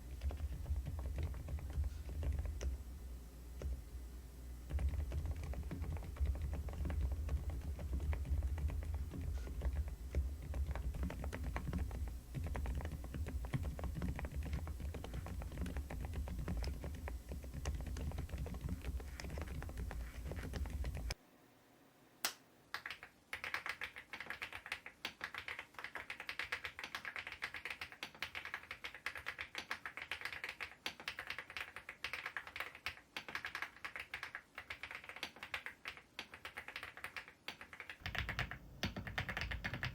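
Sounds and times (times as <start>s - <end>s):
typing on mechanical keyboard: 0.0s - 2.8s, 4.7s - 21.2s, 22.8s - 39.9s
low hum: 0.0s - 21.2s.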